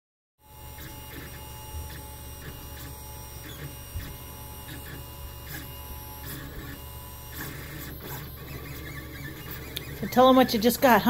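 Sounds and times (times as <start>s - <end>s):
stepper motors whining: 0.4s - 11.0s
print head ticking: 6.2s - 11.0s.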